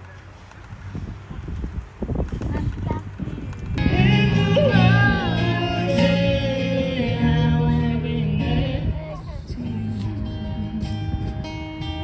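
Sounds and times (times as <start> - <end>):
guitar and bass accompaniment: 2.4 - 12.0
person singing: 3.8 - 11.3.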